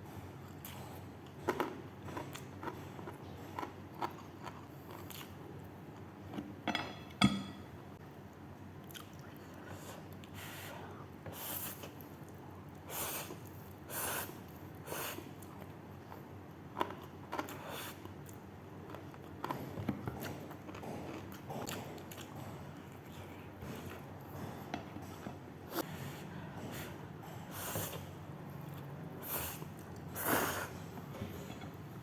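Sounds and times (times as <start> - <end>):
person sniffing: 29.2 - 31.5.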